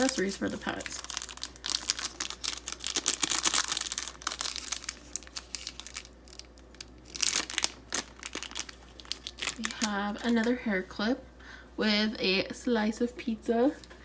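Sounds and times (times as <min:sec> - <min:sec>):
plastic bag tearing and crinkling: 0:00.0 - 0:10.5.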